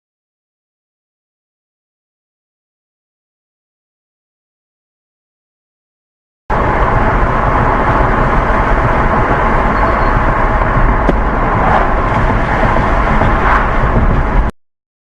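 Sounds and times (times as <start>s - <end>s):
road and wind noise in car: 6.5s - 14.6s.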